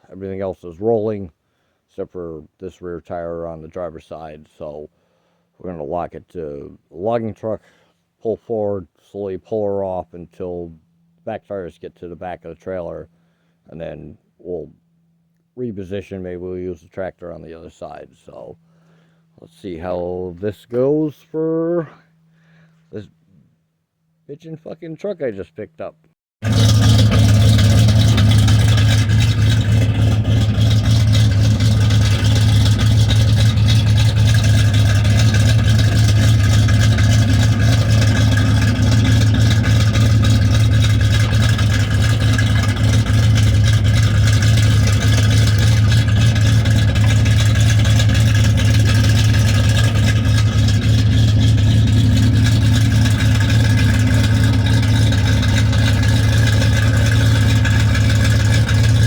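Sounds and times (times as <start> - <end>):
truck engine running steadily: 26.4 - 59.0.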